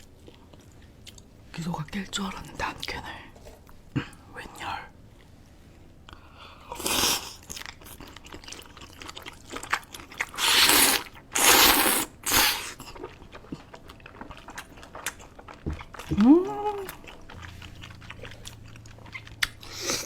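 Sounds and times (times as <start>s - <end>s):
chewing and crunching: 0.0s - 1.5s, 6.1s - 20.0s.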